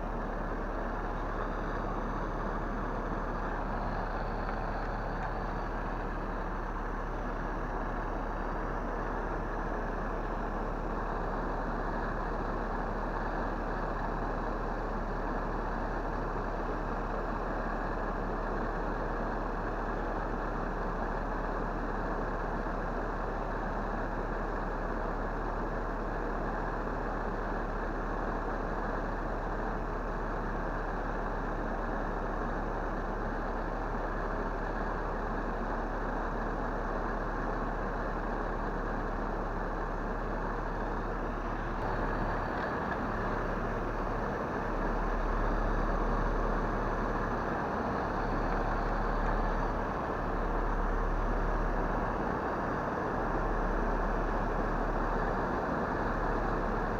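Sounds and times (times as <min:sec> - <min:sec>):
car engine running: 0:00.0 - 0:17.4, 0:29.8 - 0:56.9.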